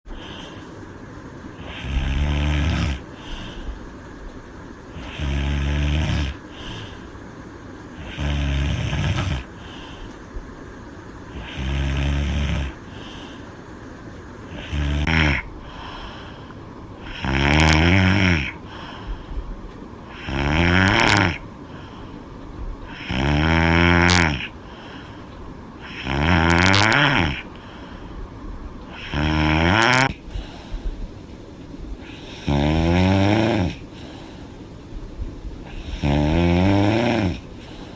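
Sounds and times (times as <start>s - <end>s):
quiet breathing: 0.1s - 37.9s
woman snoring: 1.6s - 3.8s, 4.9s - 7.1s, 8.0s - 10.2s, 11.3s - 13.5s, 14.5s - 19.2s, 20.1s - 22.0s, 22.8s - 25.0s, 25.8s - 27.7s, 28.9s - 30.6s, 32.0s - 34.0s, 35.6s - 37.6s.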